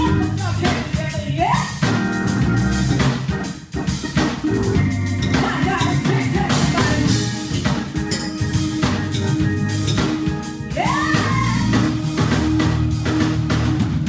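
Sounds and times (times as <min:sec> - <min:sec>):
drum kit: 0:00.0 - 0:14.0
organ: 0:00.0 - 0:14.0
person singing: 0:05.4 - 0:07.2, 0:10.7 - 0:11.9.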